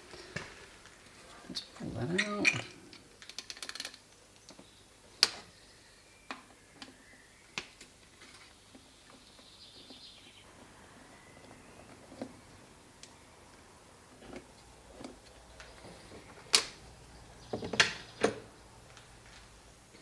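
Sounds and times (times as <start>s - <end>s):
rattle of small clicks: 3.2s - 4.2s.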